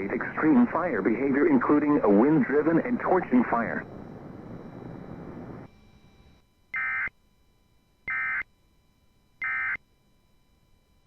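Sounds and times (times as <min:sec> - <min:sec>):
faint radio hiss: 0:00.0 - 0:05.7.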